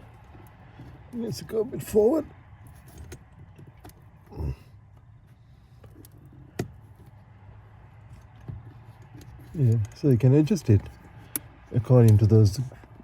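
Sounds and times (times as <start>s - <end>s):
low steady hum: 0.0s - 13.0s
handling ticks and clicks: 8.0s - 13.0s.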